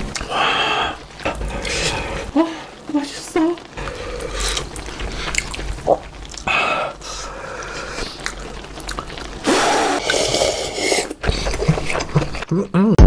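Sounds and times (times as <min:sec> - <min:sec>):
wet chewing mouth sounds: 0:04.3 - 0:06.5, 0:07.6 - 0:09.3, 0:10.0 - 0:12.7.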